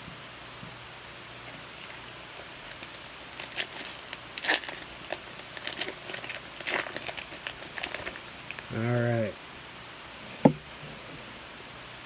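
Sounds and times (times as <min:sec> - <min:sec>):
card wrapper crinkling: 0:01.5 - 0:09.0.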